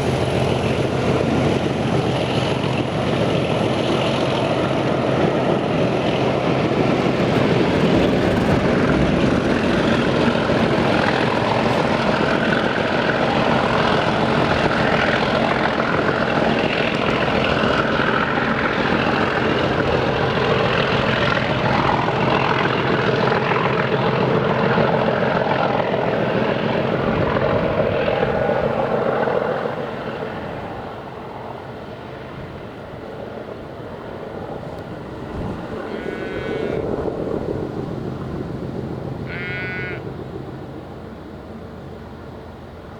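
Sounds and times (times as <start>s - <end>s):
diesel locomotive engine thrashing: 6.4s - 22.0s.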